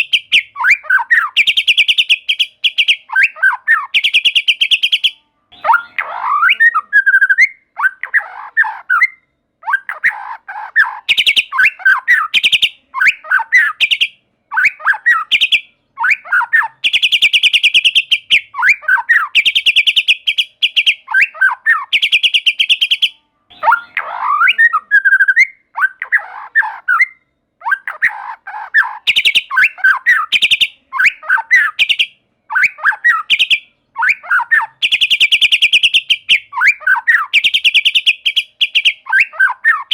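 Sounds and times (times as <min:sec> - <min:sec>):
bird whistled notes: 0:28.8 - 0:39.9.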